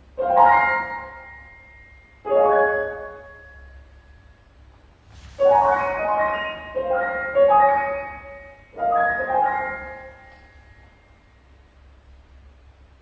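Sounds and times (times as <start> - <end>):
loud piano chords: 4.9 - 11.3.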